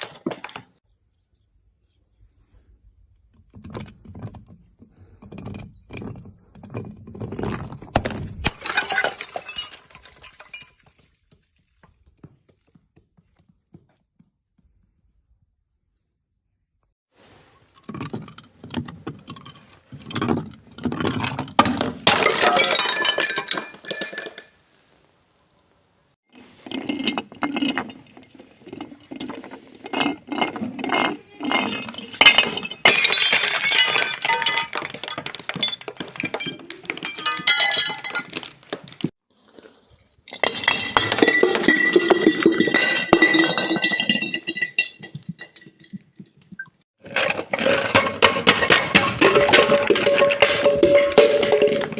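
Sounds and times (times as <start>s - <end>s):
glass bottles breaking and crushing: 0.0s - 0.8s, 8.0s - 11.2s, 20.9s - 24.6s, 26.6s - 51.9s.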